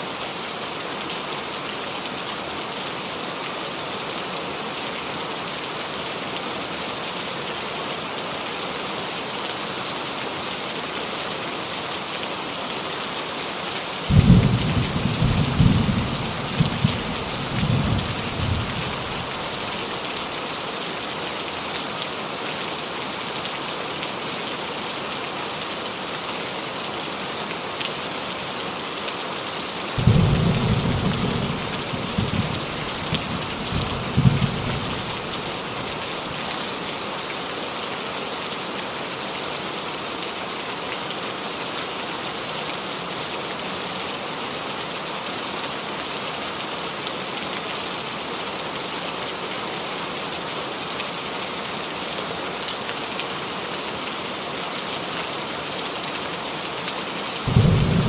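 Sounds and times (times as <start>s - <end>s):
rain on a roof: 0.0s - 58.0s
thunder rumbling: 14.1s - 19.4s.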